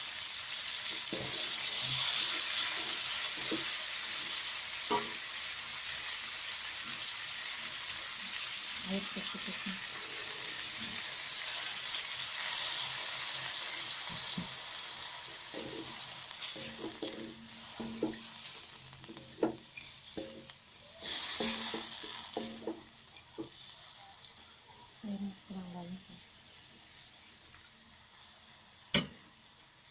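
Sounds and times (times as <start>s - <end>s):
food sizzling in hot oil: 0.0s - 29.9s
spatula scraping a pan: 15.3s - 23.7s.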